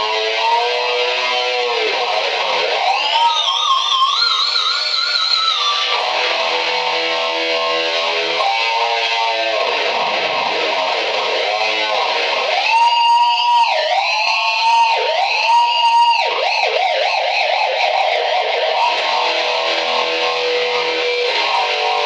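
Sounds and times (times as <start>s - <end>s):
distorted electric guitar: 0.0s - 22.0s.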